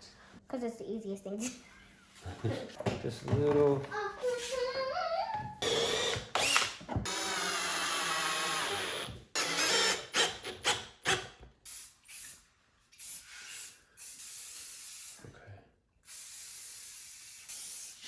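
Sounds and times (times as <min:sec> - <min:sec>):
power drill motor whirring: 0:05.6 - 0:10.8.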